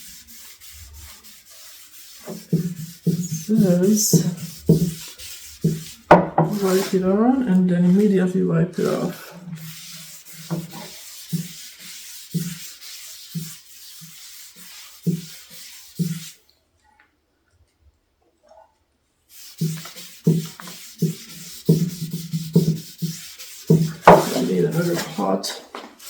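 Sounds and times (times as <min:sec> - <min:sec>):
rag rubbing on wood: 0:00.0 - 0:16.4, 0:19.3 - 0:26.0.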